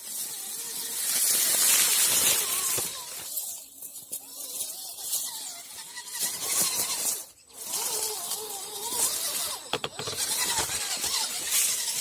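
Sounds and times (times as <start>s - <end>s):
tyres rustling in dry leaves: 0.1s - 12.0s
electric motor whining: 0.3s - 3.6s, 4.6s - 12.0s.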